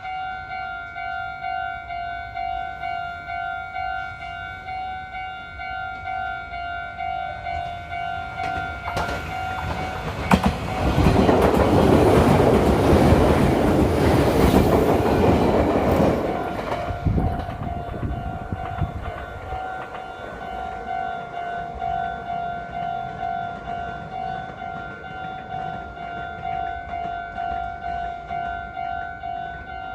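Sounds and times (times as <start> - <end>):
level crossing warning bell: 0.0 - 29.9
train wheels clattering on rails: 7.4 - 29.7.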